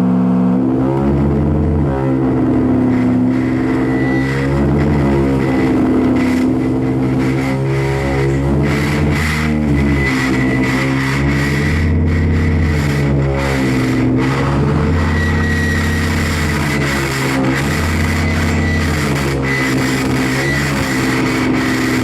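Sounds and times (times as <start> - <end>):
low droning tones: 0.0 - 22.0
thin high whine: 0.0 - 22.0
pitch-sweeping electronic tones: 1.5 - 22.0.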